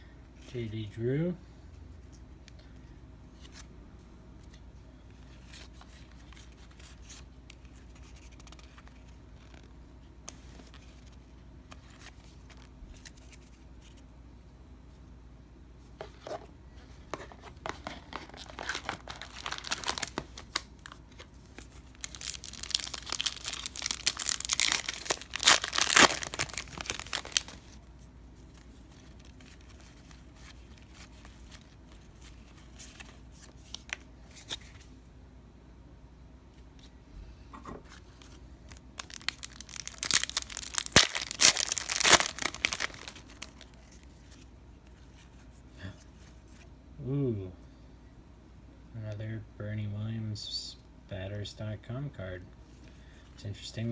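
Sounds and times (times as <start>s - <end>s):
foil wrappers tearing and crinkling: 18.1s - 21.0s, 21.6s - 27.8s, 38.7s - 44.0s.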